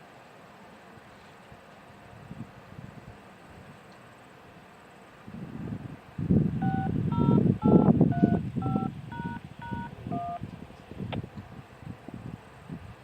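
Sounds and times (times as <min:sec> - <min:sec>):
touch-tone beeps: 0:06.6 - 0:10.4.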